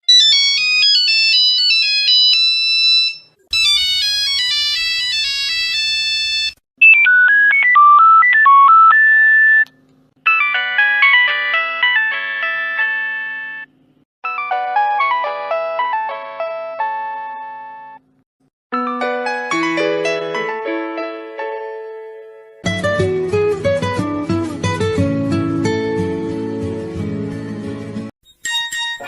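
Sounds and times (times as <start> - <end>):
electronic phone ringtone melodies: 0.1 - 9.6, 10.2 - 17.7, 28.3 - 29.0.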